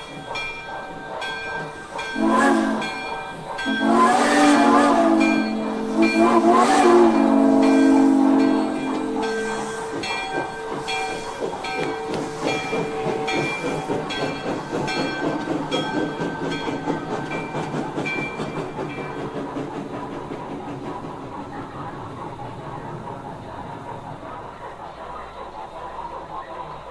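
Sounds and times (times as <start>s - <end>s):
steam chuffing and hiss: 0.0s - 26.9s
steam whistle: 2.2s - 11.2s.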